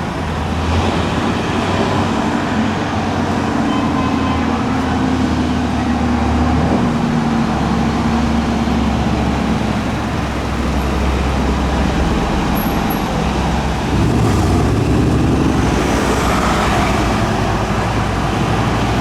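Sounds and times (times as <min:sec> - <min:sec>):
tractor diesel engine running: 0:09.0 - 0:19.0.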